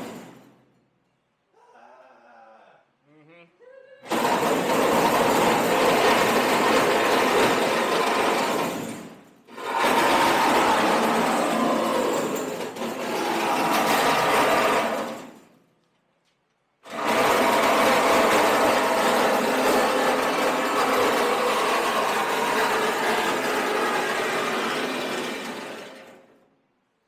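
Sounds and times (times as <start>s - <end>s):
power tool cutting sheet steel: 4.1s - 8.9s, 9.5s - 15.3s, 16.9s - 26.3s.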